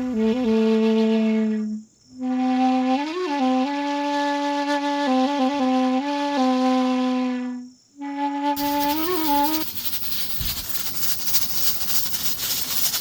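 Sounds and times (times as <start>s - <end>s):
flute-like slow melody: 0.0s - 8.6s.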